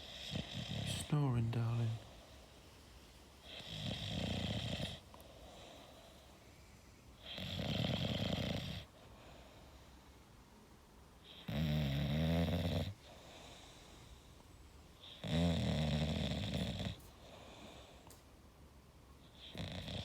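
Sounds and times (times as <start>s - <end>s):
dog snoring: 0.0s - 2.4s, 3.4s - 6.3s, 7.2s - 10.0s, 11.2s - 14.3s, 15.0s - 18.1s, 19.2s - 20.0s.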